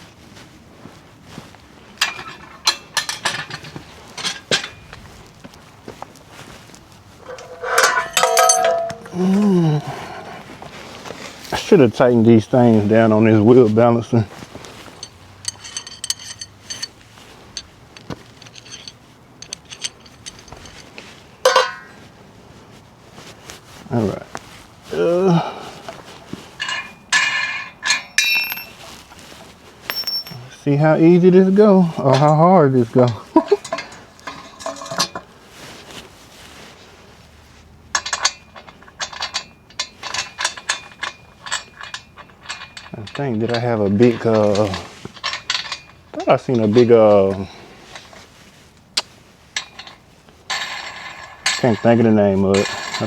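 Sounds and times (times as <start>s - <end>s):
metal parts and tools clinking: 2.0s - 5.0s, 6.4s - 10.3s, 14.3s - 22.1s, 25.5s - 30.8s, 31.5s - 35.9s, 37.9s - 48.4s, 49.0s - 53.0s
loud ringing metal clank: 7.2s - 9.2s.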